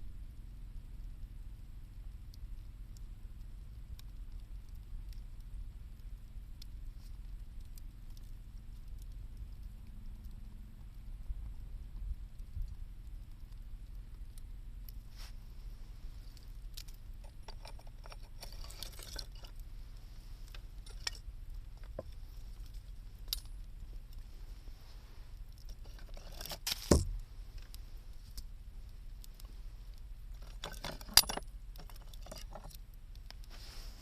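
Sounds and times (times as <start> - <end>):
low rumble: 0.0 - 0.5
wood fire crackling: 0.0 - 34.0.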